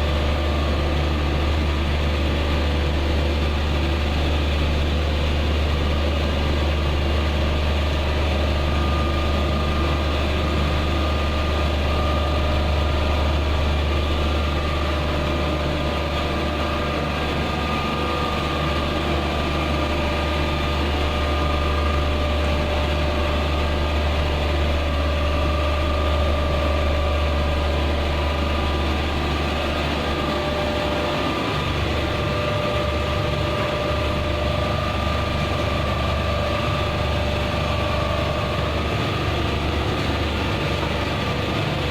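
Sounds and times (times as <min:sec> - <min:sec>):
air conditioner hum and whine: 0:00.0 - 0:41.9.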